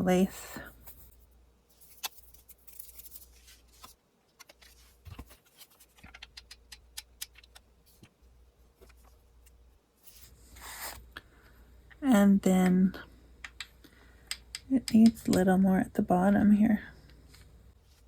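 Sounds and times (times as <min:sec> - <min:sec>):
hands clicking and tapping paper: 0:01.9 - 0:08.2, 0:13.4 - 0:15.5.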